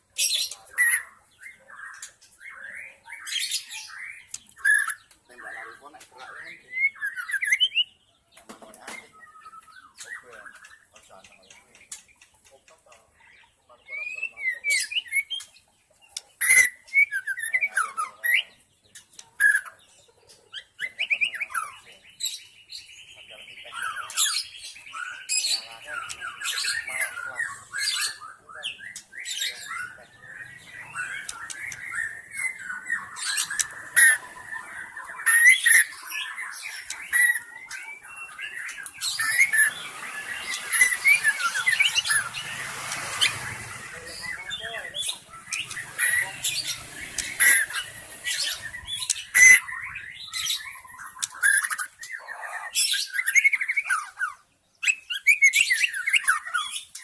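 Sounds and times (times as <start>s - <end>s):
bird singing whistled phrases and trills: 0.0s - 12.3s, 13.4s - 19.8s, 20.5s - 57.0s
bird sharp clicking notes: 4.2s - 5.2s, 30.5s - 32.6s, 33.2s - 34.7s, 36.8s - 49.6s.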